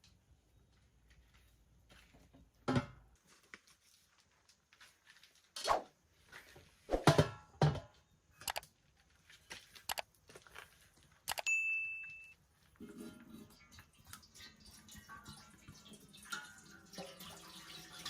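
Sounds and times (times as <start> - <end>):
kitchenware knocking and clattering: 2.6 - 3.1, 7.0 - 8.0, 12.8 - 13.7.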